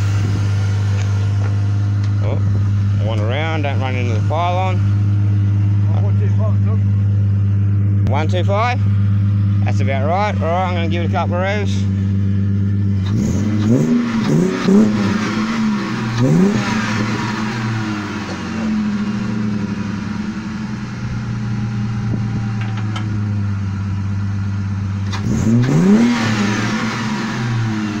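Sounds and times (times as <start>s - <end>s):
car engine revving: 0.0s - 28.0s.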